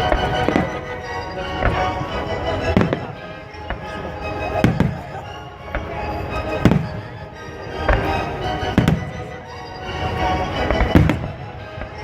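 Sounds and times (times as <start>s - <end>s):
music playing: 0.0s - 12.0s
firework bangs: 4.6s - 5.2s, 10.8s - 11.9s.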